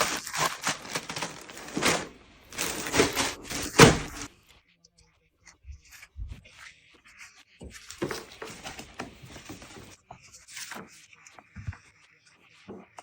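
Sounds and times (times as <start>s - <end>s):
packaging rustling and scraping: 0.0s - 4.3s, 7.8s - 10.8s.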